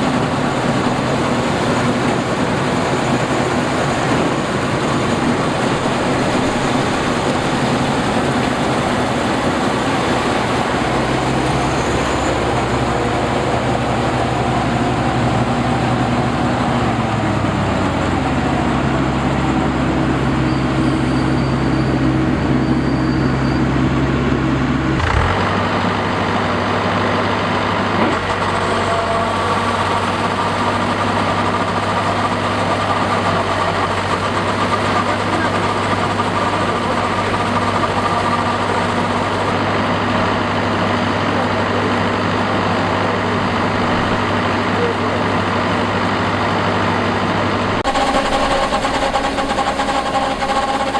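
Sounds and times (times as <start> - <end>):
combine harvester engine: 0.0 - 50.9
dense mechanical rattle: 24.8 - 26.5, 47.8 - 50.9.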